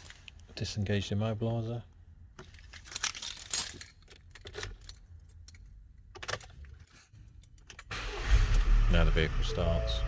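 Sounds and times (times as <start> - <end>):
keys jangling: 2.7 - 5.7.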